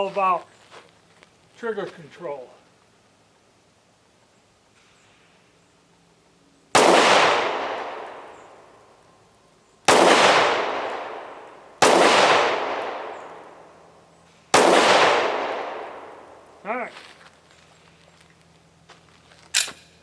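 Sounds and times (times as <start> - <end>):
pistol shots echoing: 6.8 - 8.7, 9.9 - 13.8, 14.5 - 16.4.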